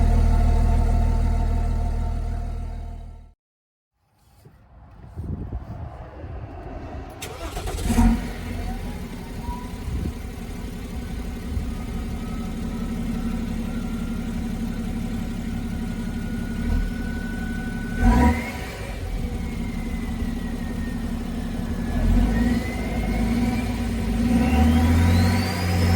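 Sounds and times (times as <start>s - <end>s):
diesel engine idling: 0.0s - 3.3s, 7.2s - 18.1s
diesel engine starting: 0.0s - 3.3s, 6.1s - 25.9s
engine rev blip: 21.9s - 25.9s.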